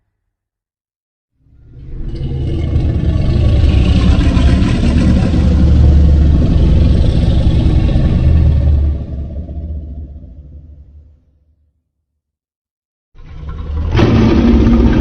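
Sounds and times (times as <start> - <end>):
deep rumbling with rough hiss: 2.1 - 11.0.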